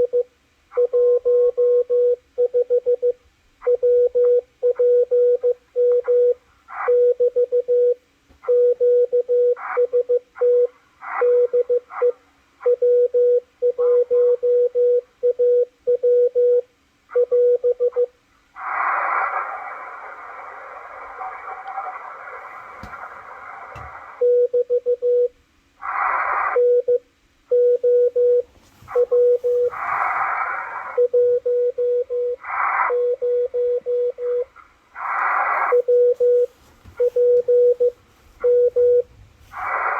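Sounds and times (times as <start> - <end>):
morse code beat tone: 26.6 - 30.2, 35.5 - 39.1.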